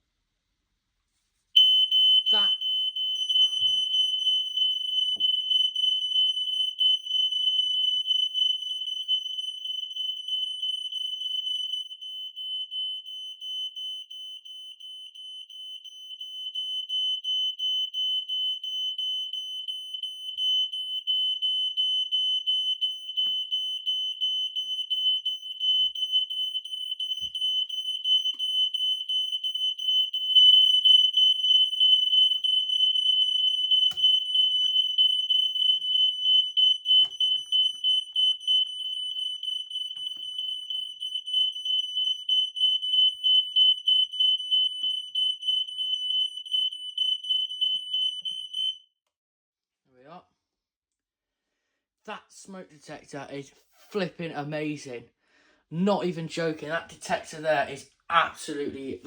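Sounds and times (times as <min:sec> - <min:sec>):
smoke alarm pulsing tone: 0:01.6 - 0:48.9.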